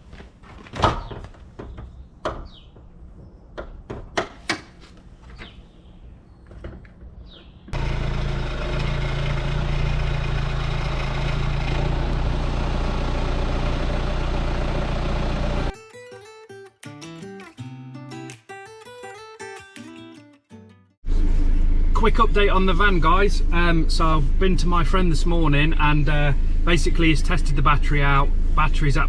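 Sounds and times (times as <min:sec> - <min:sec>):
van engine starting and idling: 0:07.7 - 0:15.8.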